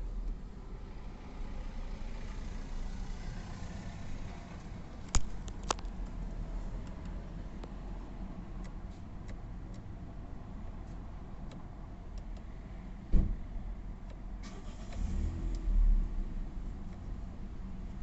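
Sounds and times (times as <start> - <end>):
noise and low rumble: 15.4 - 18.0.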